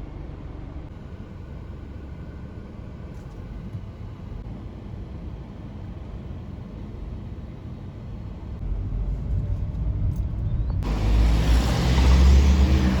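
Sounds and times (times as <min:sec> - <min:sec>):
car engine accelerating: 0:10.8 - 0:13.0.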